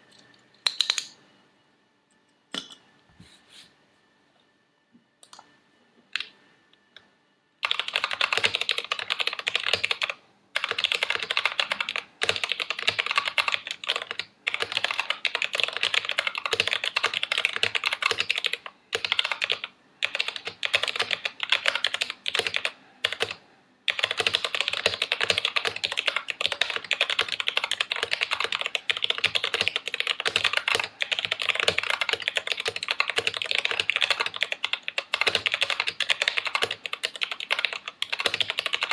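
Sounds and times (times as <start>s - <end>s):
mechanical keyboard typing: 7.6s - 38.9s.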